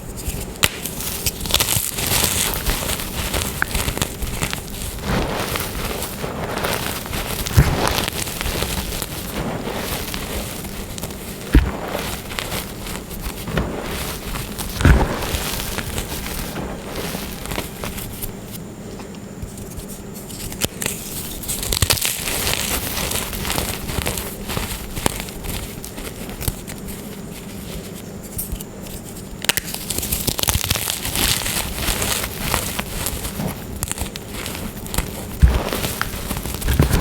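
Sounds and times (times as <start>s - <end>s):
chalk blocks being crushed: 30.6s - 37.0s.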